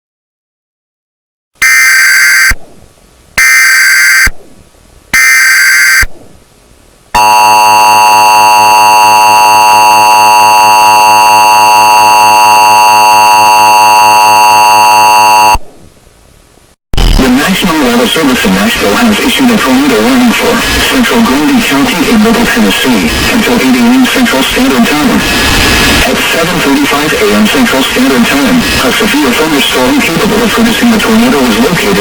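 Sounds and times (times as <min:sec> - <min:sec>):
emergency alert attention tone: 0:01.6 - 0:02.7, 0:03.4 - 0:04.4, 0:05.2 - 0:06.2, 0:07.2 - 0:15.6.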